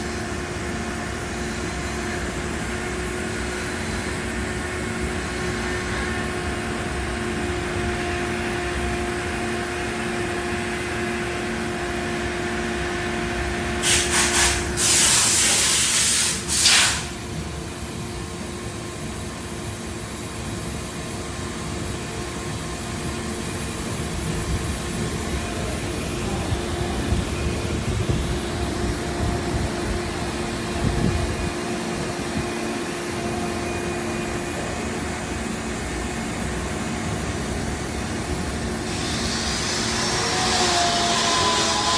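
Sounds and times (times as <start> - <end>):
air hissing: 13.8 - 17.2, 38.7 - 41.9.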